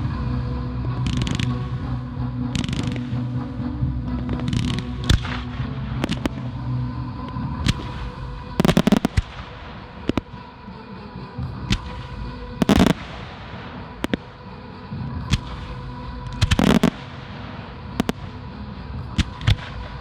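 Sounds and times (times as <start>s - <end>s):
rapid firework crackling: 1.0s - 1.6s, 2.6s - 3.3s, 4.3s - 6.8s, 7.6s - 10.5s, 11.7s - 20.0s
firework shells bursting: 8.6s - 10.3s, 12.6s - 14.5s, 16.4s - 18.4s.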